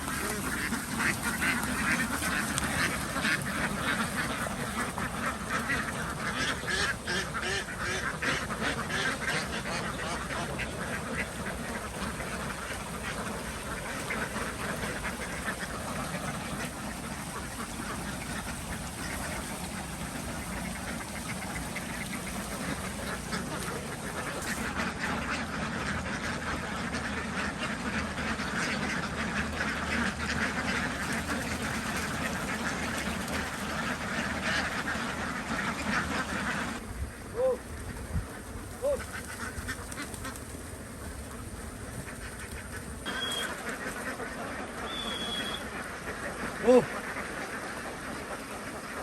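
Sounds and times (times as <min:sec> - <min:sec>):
ducks quacking: 0:00.0 - 0:49.0.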